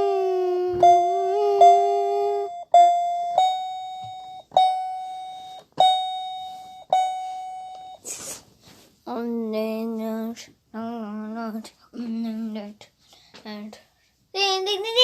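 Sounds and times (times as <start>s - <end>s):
person humming or singing: 0.0s - 2.7s
electronic chime tone: 0.8s - 8.0s.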